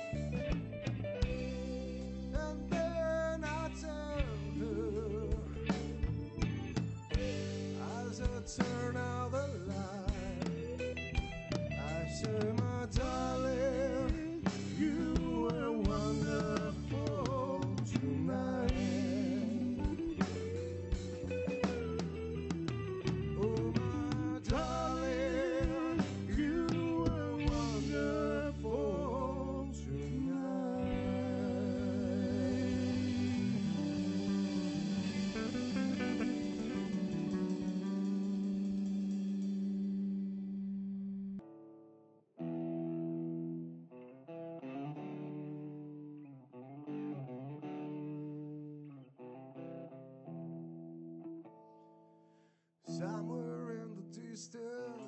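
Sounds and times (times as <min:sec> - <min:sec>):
melodic lead line with vibrato: 0:00.0 - 0:29.8, 0:30.6 - 0:40.4
bass notes: 0:00.0 - 0:41.4
electric guitar chords with effects: 0:00.0 - 0:55.0.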